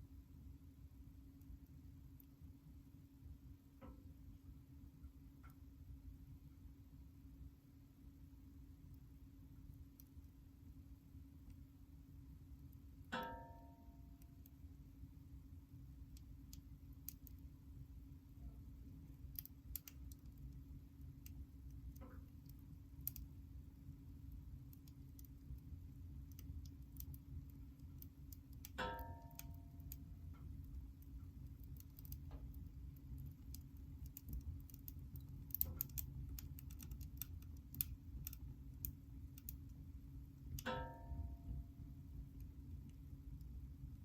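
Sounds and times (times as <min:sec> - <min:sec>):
low fire rumble: 0:14.7 - 0:40.7, 0:41.6 - 0:44.0
firewood crackling and popping: 0:19.0 - 0:23.4, 0:24.2 - 0:39.8.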